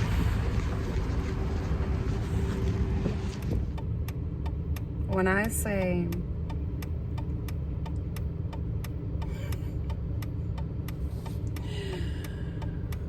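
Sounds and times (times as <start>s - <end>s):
car engine idling: 0.0s - 13.0s
turn signal relay ticking: 3.4s - 13.0s.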